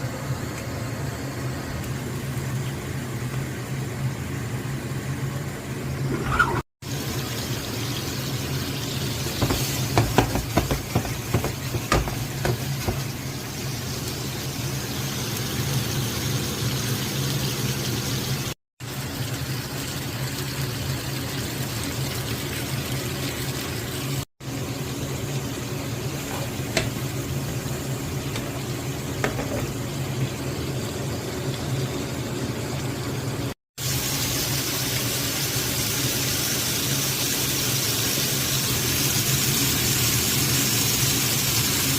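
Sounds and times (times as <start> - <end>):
meat sizzling in a pan: 6.8 - 31.4, 33.8 - 41.9.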